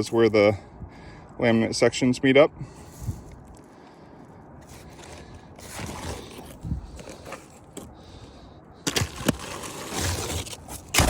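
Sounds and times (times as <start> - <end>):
shingles scraping and rustling: 4.6 - 8.2, 8.8 - 11.0.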